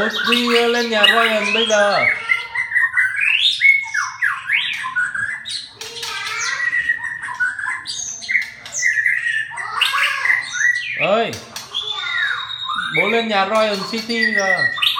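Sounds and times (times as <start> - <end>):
bird chirping whistle-like calls: 0.0 - 14.9
bird squawking: 0.0 - 14.9.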